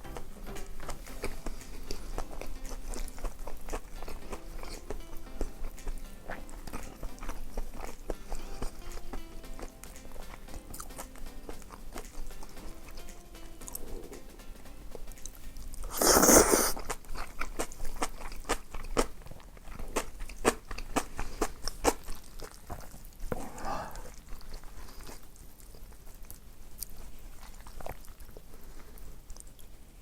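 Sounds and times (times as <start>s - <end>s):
crunchy chewing: 0.0s - 14.3s, 15.0s - 29.8s
loud bite: 15.9s - 19.1s.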